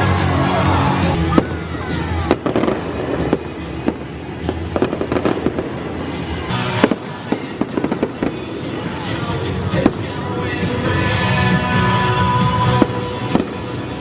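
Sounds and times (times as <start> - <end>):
stadium music: 0.0 - 14.0
fireworks bangs and crackles: 0.2 - 14.0
fireworks whistling: 1.1 - 14.0.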